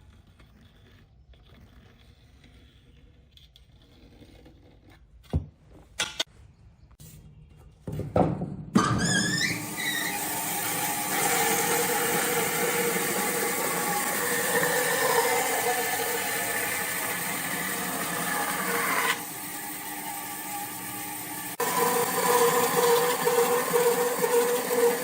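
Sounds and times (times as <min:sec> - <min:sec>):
woodworking power tool hissing: 0:09.3 - 0:25.0.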